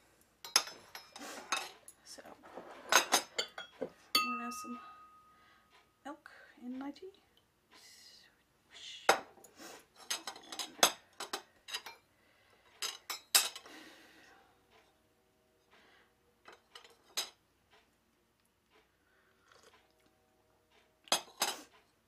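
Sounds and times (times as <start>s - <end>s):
teaspoon clinking against cup: 3.4s - 5.3s.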